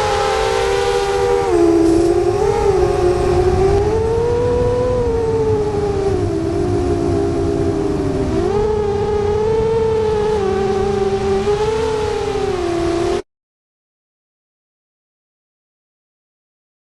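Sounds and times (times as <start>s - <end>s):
drone motors whining: 0.0s - 13.2s
propeller wash and wind: 0.0s - 13.2s.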